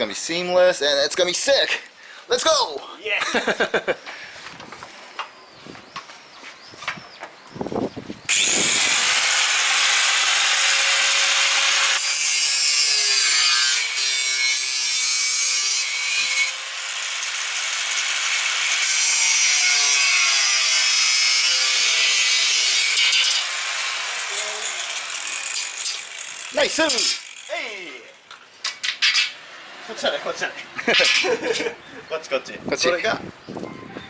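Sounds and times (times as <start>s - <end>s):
power tool cutting: 8.3s - 28.2s.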